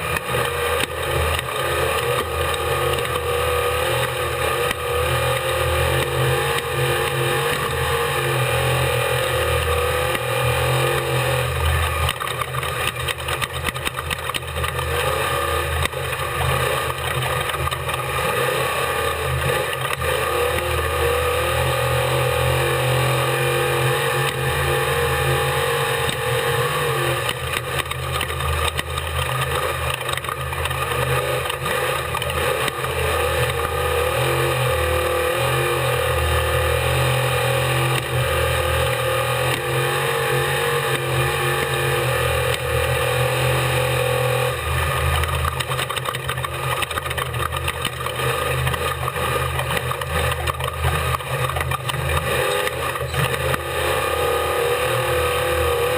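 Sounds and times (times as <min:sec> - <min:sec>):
race vehicle engine running hard: 0:00.0 - 0:55.9
rattles and jolts: 0:44.5 - 0:53.8.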